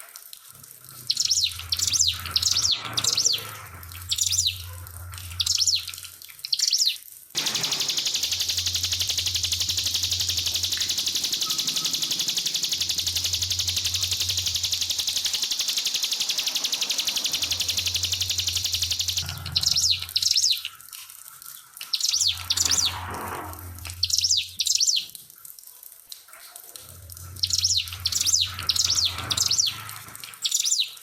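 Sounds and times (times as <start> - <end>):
faint trickling water: 0.0 - 7.3, 7.9 - 31.0
songbird trilling and chirping: 1.1 - 4.8, 5.4 - 5.9, 6.6 - 20.6, 22.0 - 23.1, 27.4 - 29.8.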